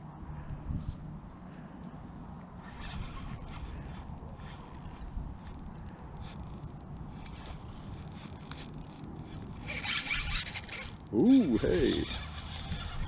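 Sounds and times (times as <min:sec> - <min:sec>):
fishing reel clicking and ratcheting: 0:02.6 - 0:13.0.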